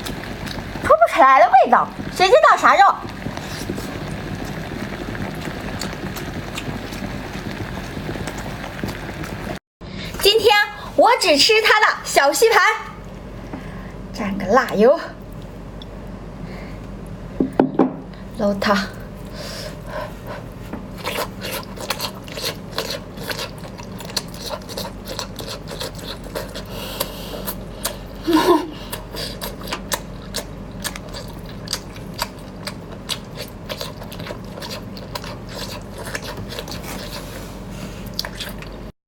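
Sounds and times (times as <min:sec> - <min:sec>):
wet chewing clicks and smacks: 0:03.1 - 0:09.4, 0:21.0 - 0:28.0, 0:28.9 - 0:37.3, 0:38.1 - 0:38.9.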